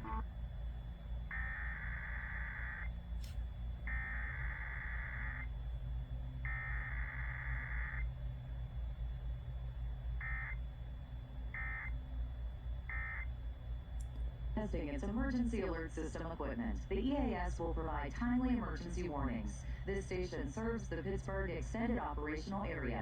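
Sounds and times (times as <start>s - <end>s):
low radio hum: 0.0s - 23.0s.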